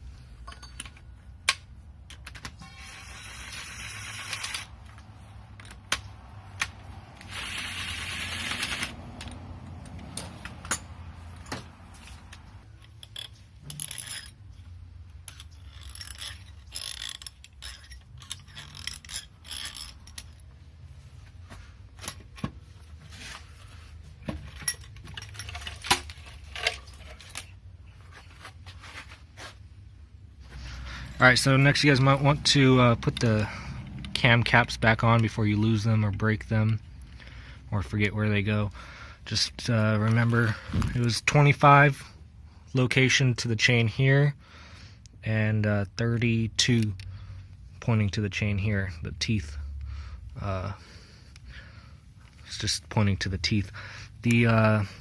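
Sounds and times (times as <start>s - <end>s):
metal tools clinking and scraping: 0.2s - 29.7s.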